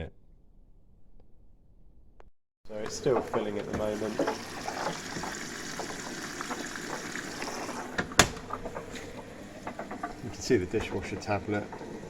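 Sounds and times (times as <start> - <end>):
water trickling into washing machine: 2.7 - 12.0.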